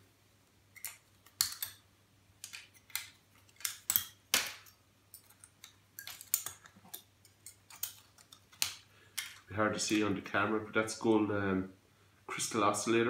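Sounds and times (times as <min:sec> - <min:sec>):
metal tools clicking: 0:02.4 - 0:09.4.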